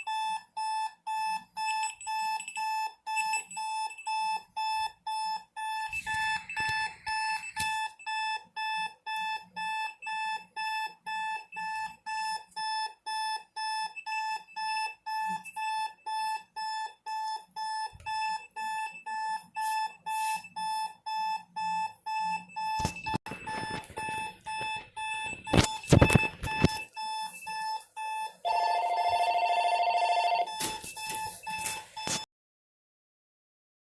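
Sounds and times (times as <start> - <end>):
alarm clock beeping: 0.0 - 32.3.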